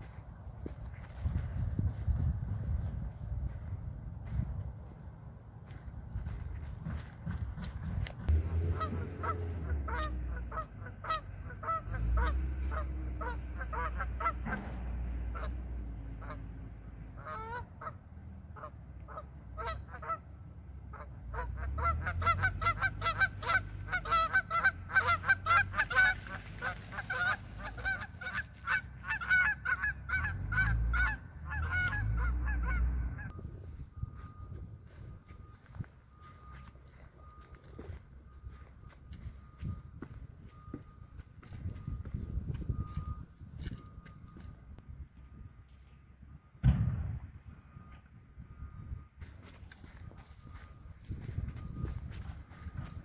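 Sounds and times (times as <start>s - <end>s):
low rumble: 0.0s - 10.6s, 30.5s - 53.0s
geese honking: 5.6s - 16.5s, 17.2s - 18.0s, 18.6s - 20.3s, 20.9s - 43.9s.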